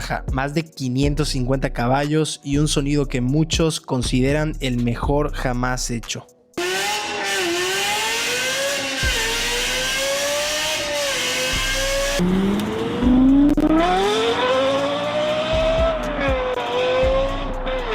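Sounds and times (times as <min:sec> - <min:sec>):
car engine accelerating hard: 0:06.6 - 0:17.9.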